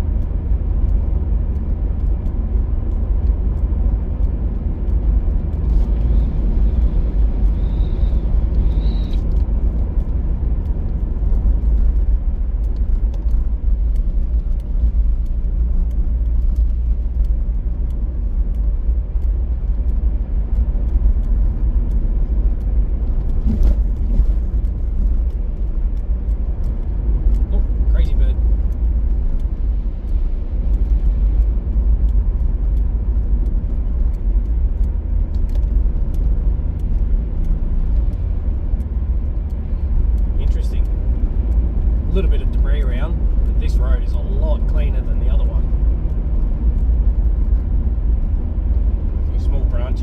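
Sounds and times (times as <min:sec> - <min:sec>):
car cabin road and engine rumble: 0:00.0 - 0:50.0.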